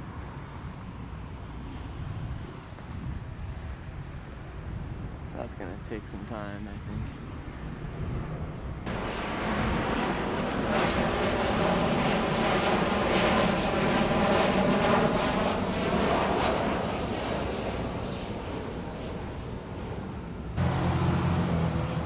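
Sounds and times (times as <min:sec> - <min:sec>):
jet aircraft passing overhead: 0:00.0 - 0:22.0.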